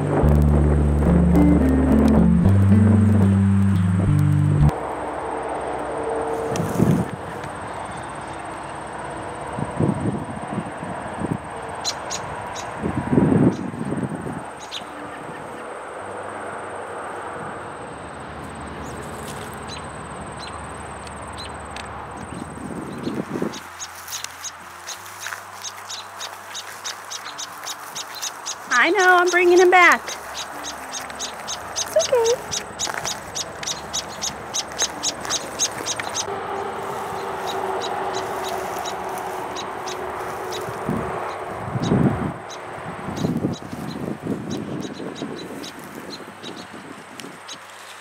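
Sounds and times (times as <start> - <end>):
high-pitched whine: 0.0 - 9.5
wind rush: 6.3 - 7.4, 12.2 - 14.6, 22.1 - 29.3, 30.0 - 47.5
rustle: 6.3 - 7.6, 18.4 - 20.0, 20.7 - 41.6, 45.2 - 48.0
high bird chirps: 22.3 - 36.3.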